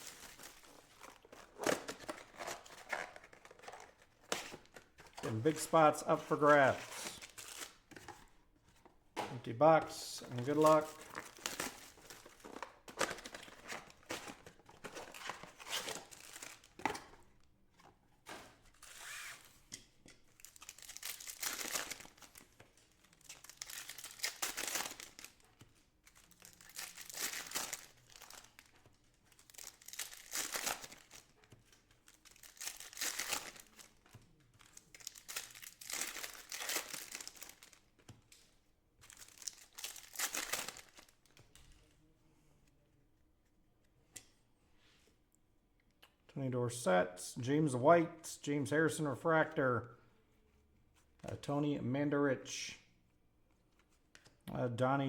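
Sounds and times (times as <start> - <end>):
wrappers tearing and crinkling: 10.2 - 16.8, 20.4 - 25.5, 26.1 - 31.4, 32.1 - 34.0, 34.6 - 37.8, 39.1 - 41.2.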